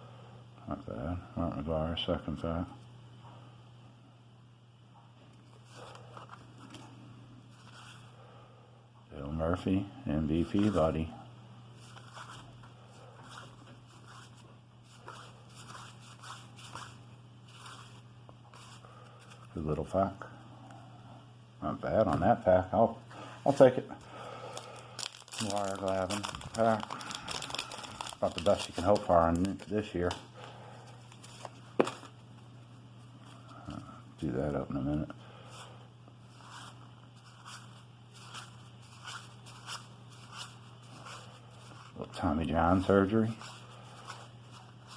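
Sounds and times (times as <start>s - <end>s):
low steady hum: 0.0s - 44.9s
cards sliding and rustling: 5.4s - 6.9s, 7.5s - 8.1s, 10.5s - 11.0s, 11.8s - 19.5s, 24.5s - 30.2s, 30.9s - 32.2s, 35.5s - 42.0s, 43.3s - 44.9s
cardboard cards swishing: 11.8s - 12.6s, 13.2s - 19.5s, 36.3s - 42.0s.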